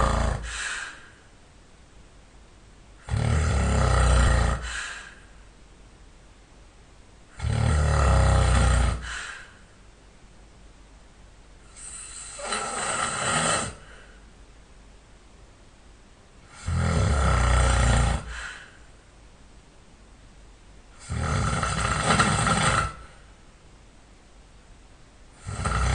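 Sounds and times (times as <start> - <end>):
man snoring loudly: 0.0 - 0.6, 3.0 - 4.8, 7.4 - 9.1, 11.7 - 13.9, 16.5 - 18.4, 21.0 - 23.1, 25.4 - 25.9
quiet breath: 0.0 - 1.4, 4.0 - 5.6, 8.4 - 9.9, 11.6 - 14.4, 17.6 - 19.1.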